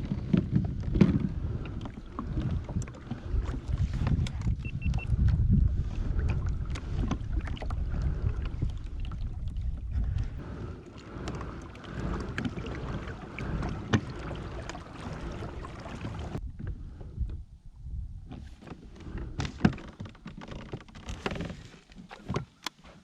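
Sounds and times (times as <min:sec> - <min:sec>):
gear and hull knocks: 0:00.0 - 0:04.6
wind rumbling on microphone: 0:00.0 - 0:21.7.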